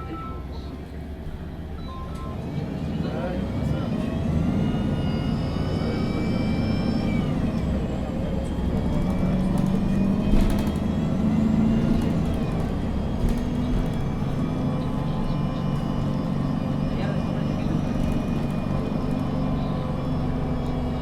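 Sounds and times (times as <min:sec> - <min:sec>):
bus engine hum: 0:00.0 - 0:21.0
road noise: 0:00.0 - 0:21.0.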